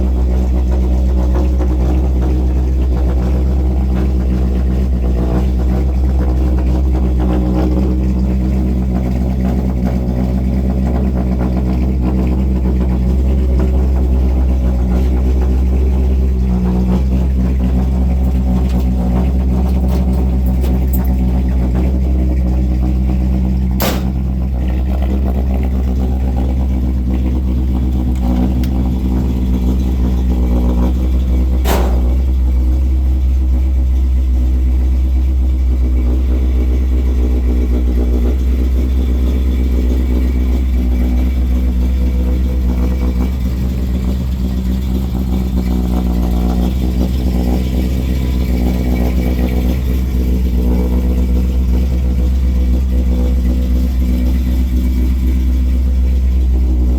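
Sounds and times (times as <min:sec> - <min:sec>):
car engine rumbling: 0:00.0 - 0:56.9.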